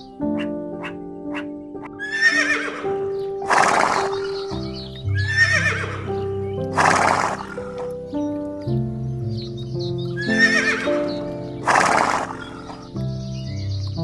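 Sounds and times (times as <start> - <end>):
background music with held notes: 0.0 - 14.0
horse whinnying: 2.0 - 6.1, 6.8 - 7.8, 10.2 - 12.9.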